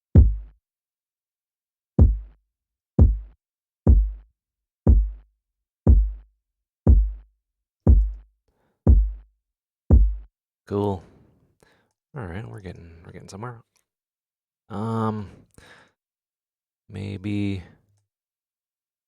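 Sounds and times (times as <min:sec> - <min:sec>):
electronic kick drum: 0:00.1 - 0:00.6, 0:02.0 - 0:02.4, 0:03.0 - 0:04.3, 0:04.9 - 0:05.2, 0:05.9 - 0:06.3, 0:06.9 - 0:07.3, 0:07.9 - 0:08.2, 0:08.9 - 0:09.3, 0:09.9 - 0:10.3.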